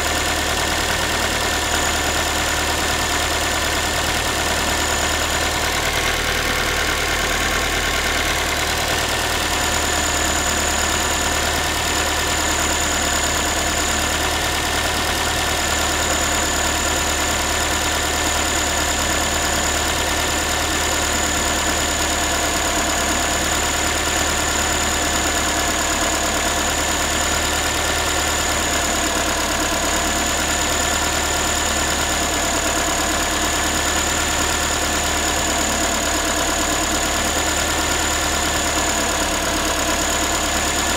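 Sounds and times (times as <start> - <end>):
car engine idling: 0.0 - 40.9.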